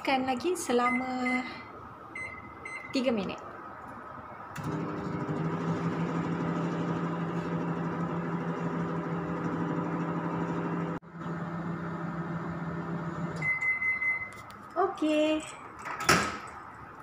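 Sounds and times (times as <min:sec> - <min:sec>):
long microwave beep: 0:00.8 - 0:03.1, 0:13.4 - 0:14.4
microwave oven humming: 0:04.6 - 0:14.2.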